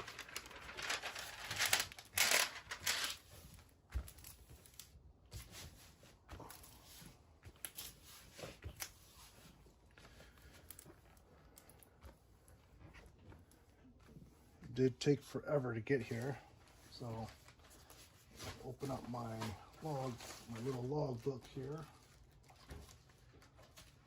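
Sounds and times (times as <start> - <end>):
plastic film crinkling and rustling: 0.0 - 13.0, 15.6 - 24.0.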